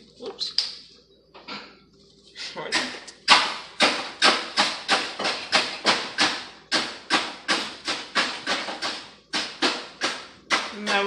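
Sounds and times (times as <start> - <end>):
knife chopping on cutting board: 2.7 - 11.0.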